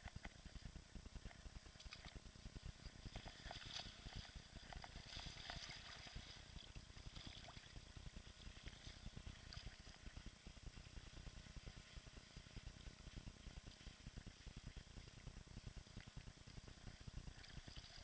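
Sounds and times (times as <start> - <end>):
low rumble on microphone: 0.0 - 18.0
water splashing and trickling: 2.8 - 10.6, 16.1 - 18.0.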